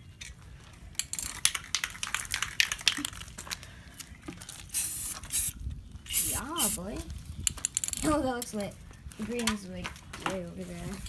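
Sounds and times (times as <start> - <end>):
spray can rattling: 4.7 - 6.9
spray paint hissing: 4.7 - 6.9.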